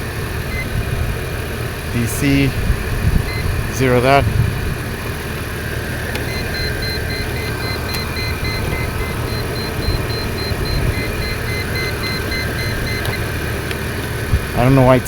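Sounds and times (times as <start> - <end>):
car engine idling: 0.0 - 15.0
high electronic beeps: 3.3 - 3.5, 6.3 - 13.3.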